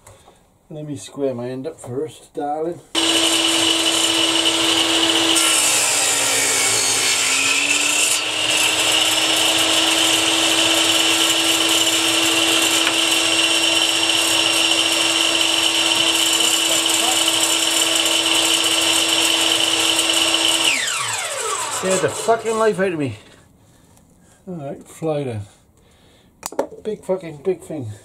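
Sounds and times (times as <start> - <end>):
table saw cutting a board: 3.0 - 23.0.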